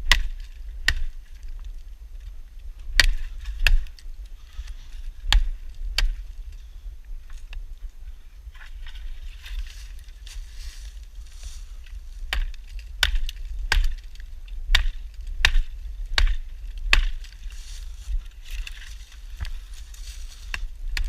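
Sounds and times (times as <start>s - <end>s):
hatchet chopping green wood: 0.0s - 1.2s, 2.9s - 4.0s, 5.3s - 6.2s, 12.3s - 14.1s, 14.7s - 17.3s.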